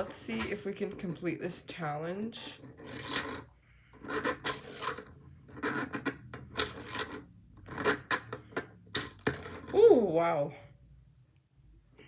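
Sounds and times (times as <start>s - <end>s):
ball rattling in plastic toy: 2.7s - 3.5s, 4.1s - 9.8s.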